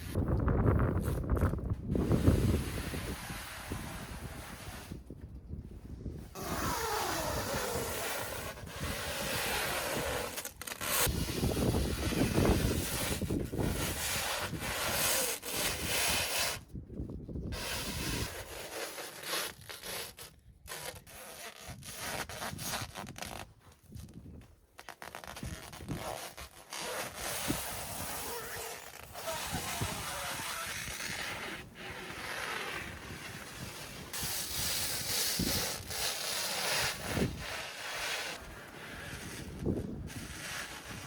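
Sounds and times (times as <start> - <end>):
rubbing and scraping: 0.9 - 5.1, 6.2 - 16.7, 17.4 - 24.2, 24.8 - 41.0.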